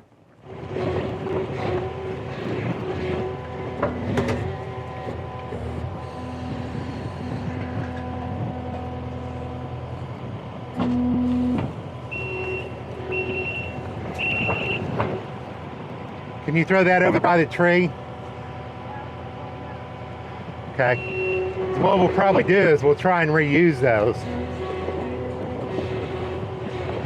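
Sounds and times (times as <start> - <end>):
skid steer running: 0.0 - 27.0
backup alarm beeping: 10.8 - 15.0, 21.0 - 21.8.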